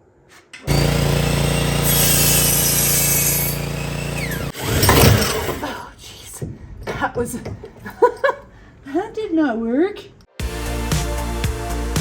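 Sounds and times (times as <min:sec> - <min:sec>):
electric power tool motor running: 0:00.6 - 0:05.6
loud rough clatter: 0:00.6 - 0:05.8.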